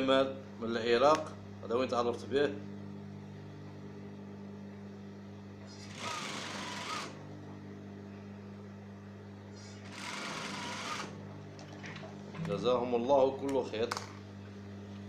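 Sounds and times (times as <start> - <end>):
steady low hum: 0.0 - 15.0
sewing machine stitching: 5.9 - 7.2, 9.8 - 11.2.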